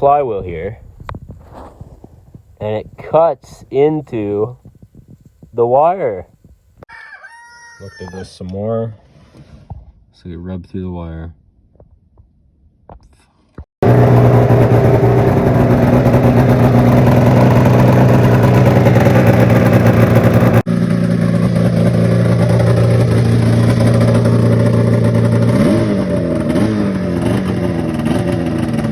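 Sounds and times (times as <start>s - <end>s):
engine throttle blips: 0.0s - 5.9s, 13.8s - 28.9s
snowmobile engine fast idle: 13.8s - 28.9s.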